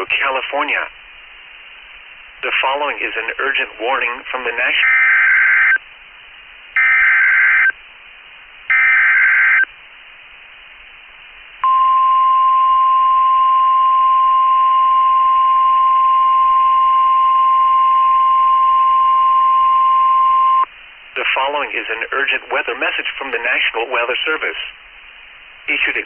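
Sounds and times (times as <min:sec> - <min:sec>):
steady warning alarm tone: 0:04.8 - 0:05.8, 0:06.8 - 0:07.7, 0:08.7 - 0:09.7
raspy data bursts: 0:06.8 - 0:07.8, 0:08.7 - 0:09.7.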